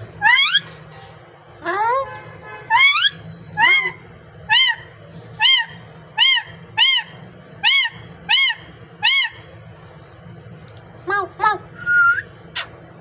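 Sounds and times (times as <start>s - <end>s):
parrot calling: 0.2s - 0.7s, 2.7s - 9.5s.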